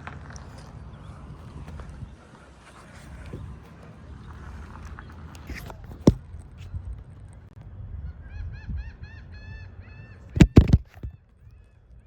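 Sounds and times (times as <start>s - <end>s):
loud knocks: 10.4s - 11.2s.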